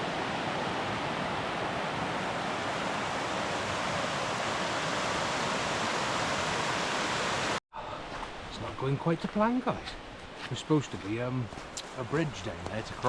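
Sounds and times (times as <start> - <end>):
fast-flowing water rushing: 0.0 - 7.6.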